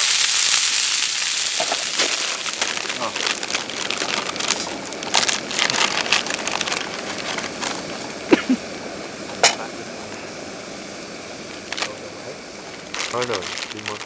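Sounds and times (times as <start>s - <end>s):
campfire crackling and popping: 0.0s - 14.0s
steady hiss: 0.0s - 14.0s.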